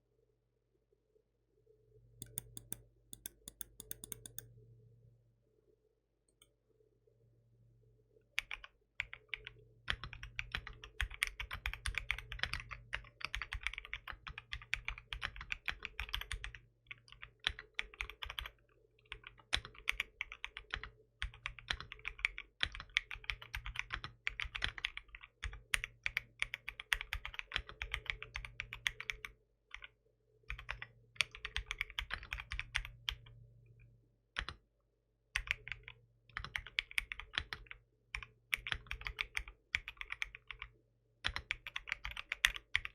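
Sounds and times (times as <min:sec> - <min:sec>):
mechanical keyboard typing: 0:02.2 - 0:04.5, 0:08.4 - 0:18.5, 0:19.2 - 0:29.9, 0:30.5 - 0:33.3, 0:35.4 - 0:42.9.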